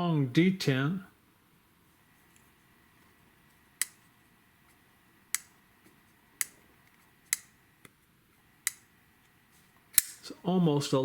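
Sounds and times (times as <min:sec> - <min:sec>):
folding knife snapping open: 0:10.0 - 0:10.2.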